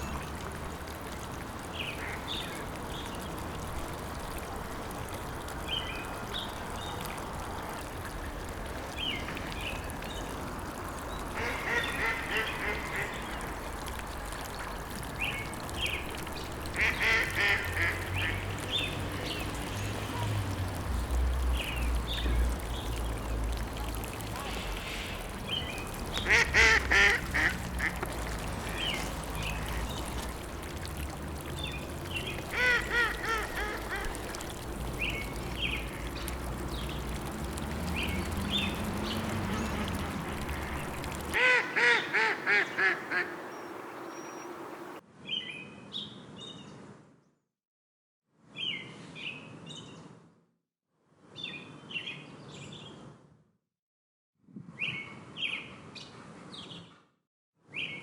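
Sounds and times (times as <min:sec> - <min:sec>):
small birds chirping: 0:11.0 - 0:45.0
ducks quacking: 0:11.4 - 0:13.2, 0:16.7 - 0:18.5, 0:25.0 - 0:30.2, 0:32.5 - 0:34.5, 0:39.7 - 0:43.5.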